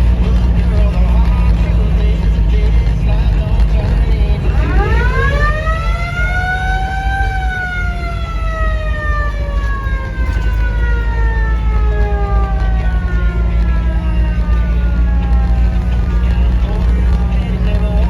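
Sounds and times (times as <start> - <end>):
low vehicle rumble: 0.0 - 18.0
siren wailing: 4.0 - 18.0.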